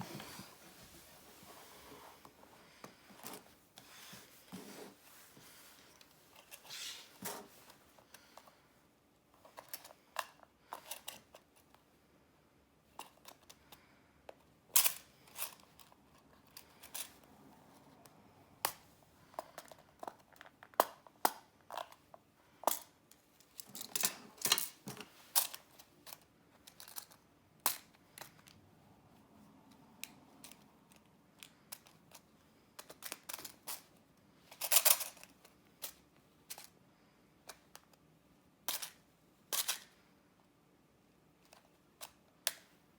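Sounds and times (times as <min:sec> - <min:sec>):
scrape: 0:00.0 - 0:07.9.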